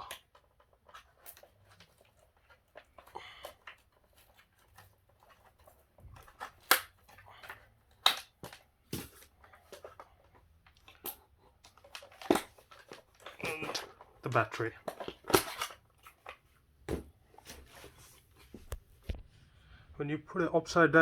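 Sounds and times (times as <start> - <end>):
plastic vacuum parts clicking: 0.0 - 16.4.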